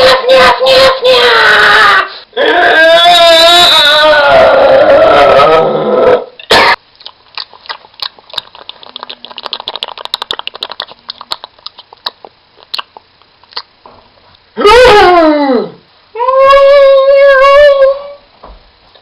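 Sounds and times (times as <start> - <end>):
mouth clicks and pops: 6.5 - 13.8.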